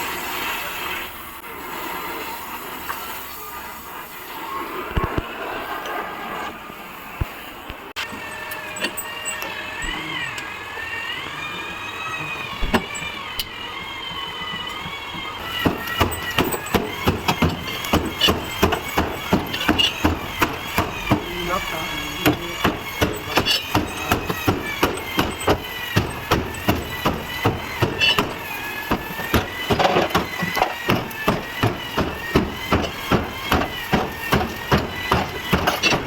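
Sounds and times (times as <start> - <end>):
hammer striking sheet metal: 15.6 - 36.0.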